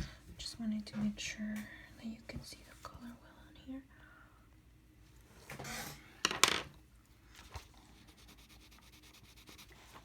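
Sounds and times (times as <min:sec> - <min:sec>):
rubbing on paper: 0:07.4 - 0:10.0.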